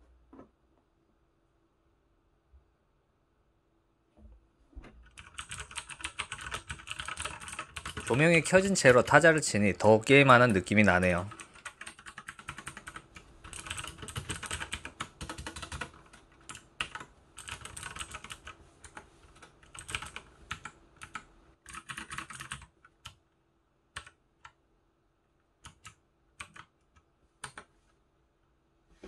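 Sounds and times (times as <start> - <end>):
mechanical keyboard typing: 5.0 - 9.2, 10.2 - 23.2, 23.9 - 24.6, 25.6 - 27.7.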